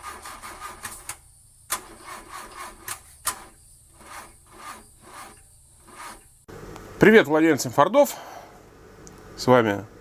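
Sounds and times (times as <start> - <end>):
rhythmic rasping strokes: 0.0 - 6.5.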